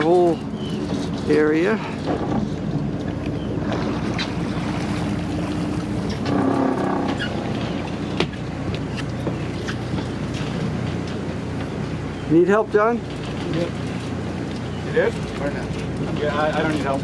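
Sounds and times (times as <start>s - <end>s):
boat motor running: 0.0s - 17.0s
water noise: 0.0s - 17.0s
wind: 0.0s - 17.0s.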